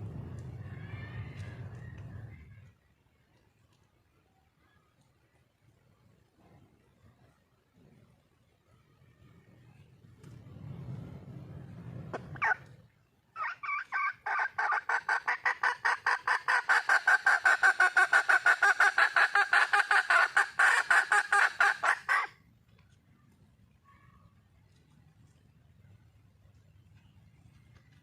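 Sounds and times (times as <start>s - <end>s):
hen clucking rapidly: 13.4s - 22.3s.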